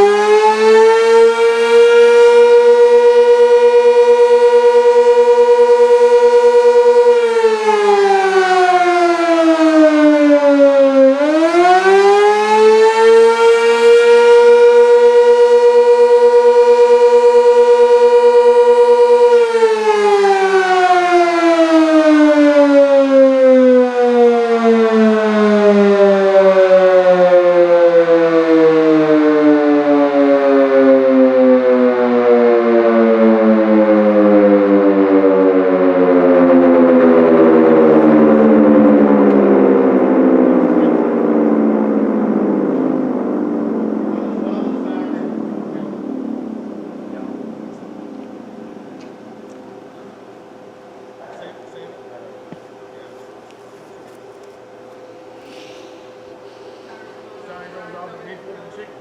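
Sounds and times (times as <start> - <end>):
warning siren wailing: 0.0 - 53.6, 56.2 - 59.0.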